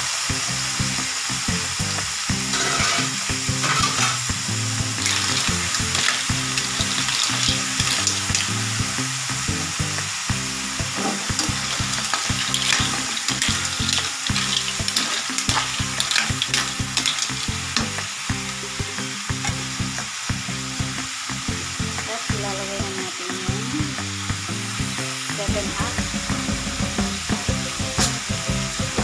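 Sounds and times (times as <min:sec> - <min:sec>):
food sizzling in frying pan: 0:00.0 - 0:29.0
utensil scraping pan: 0:02.5 - 0:04.3, 0:10.9 - 0:18.0.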